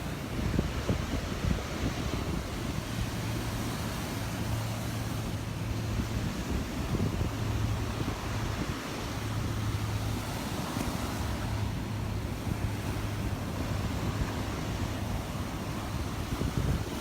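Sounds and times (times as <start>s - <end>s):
surf washing onto beach: 0.0s - 17.0s
wind buffeting microphone: 0.0s - 17.0s.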